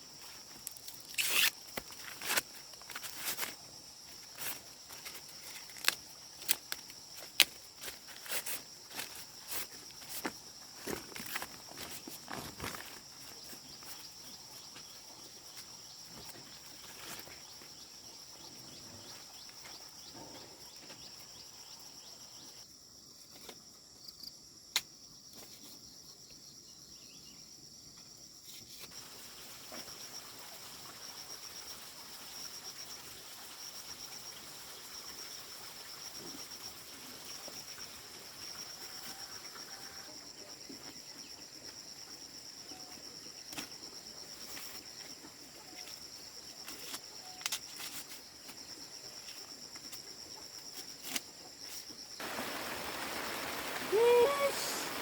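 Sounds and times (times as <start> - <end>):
insects droning and pulsing: 0.0 - 55.0.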